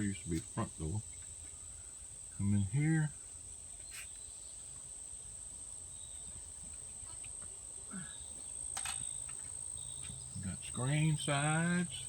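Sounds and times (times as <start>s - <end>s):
crickets chirring: 0.0s - 12.0s.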